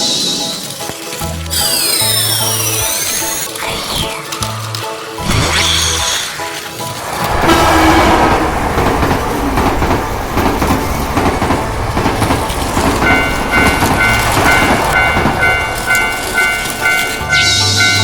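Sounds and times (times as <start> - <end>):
toy train rattling on plastic track: 0.0 - 5.2, 5.8 - 7.4, 9.0 - 18.0
two-tone level-crossing alarm: 13.0 - 18.0.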